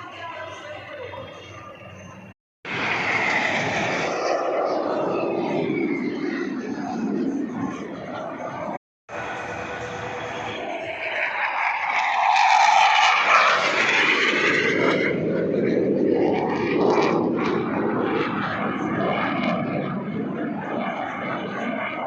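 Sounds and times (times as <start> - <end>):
airplane flying past: 0.1 - 22.0.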